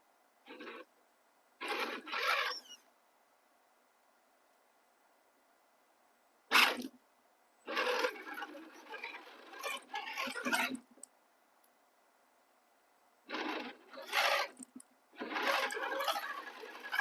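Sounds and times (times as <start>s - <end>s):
small electric motor whirring: 7.7s - 10.8s, 13.3s - 17.0s.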